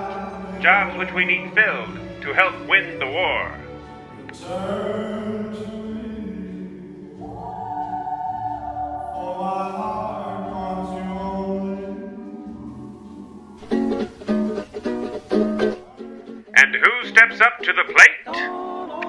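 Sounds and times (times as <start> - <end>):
choir singing held notes: 0.0 - 14.5, 15.9 - 19.0.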